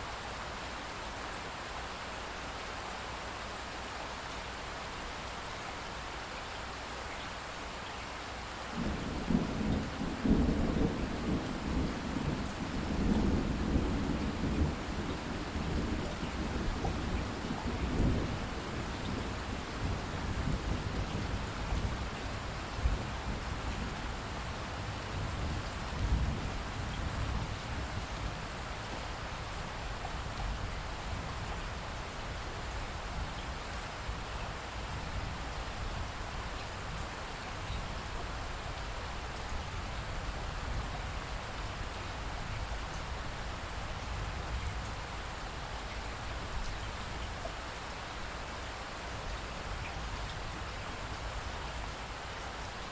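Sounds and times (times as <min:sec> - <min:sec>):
rain pattering: 0:00.0 - 0:52.9
thunder rumble: 0:08.8 - 0:22.0.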